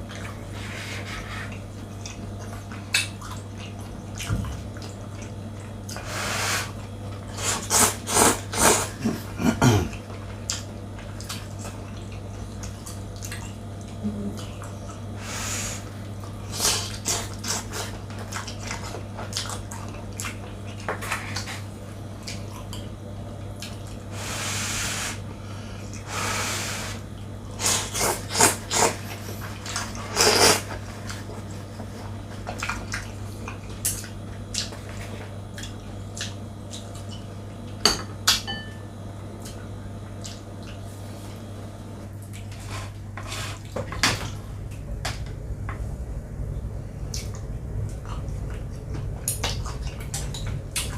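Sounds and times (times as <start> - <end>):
noodle slurping: 30.0 - 30.8
wet mouth eating sounds: 32.5 - 37.3, 39.4 - 40.9.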